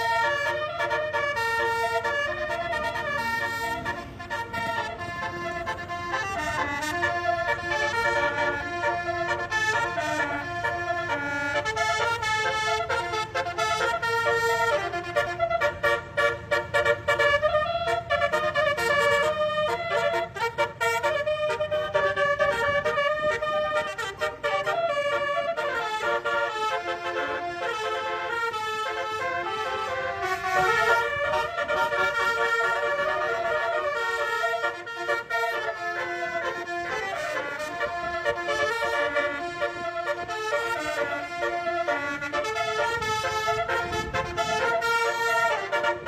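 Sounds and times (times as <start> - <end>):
multi-tone bus horn melody: 0.0 - 46.0.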